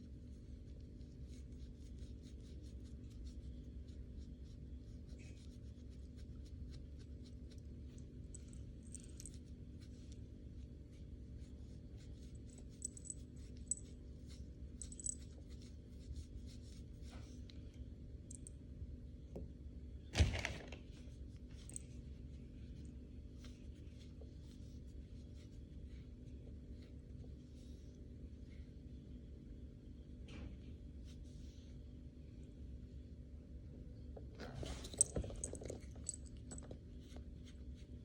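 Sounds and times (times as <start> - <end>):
steady low hum: 0.0 - 20.2.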